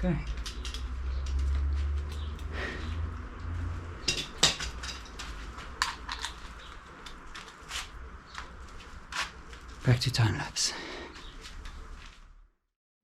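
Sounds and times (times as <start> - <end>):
metal clicks of hand tools: 0.2 - 2.5.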